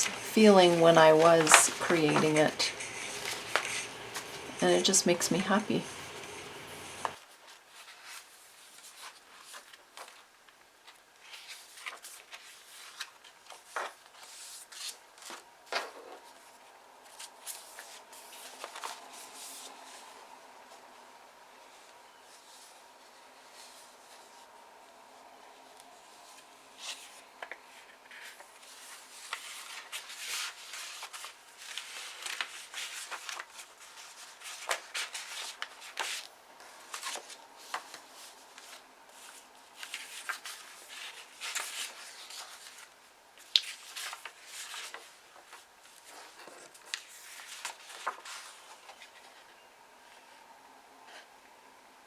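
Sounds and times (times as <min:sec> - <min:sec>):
pages turning: 0:00.0 - 0:19.8, 0:26.3 - 0:49.3
paper rustling and crinkling: 0:00.0 - 0:20.2, 0:25.9 - 0:49.6.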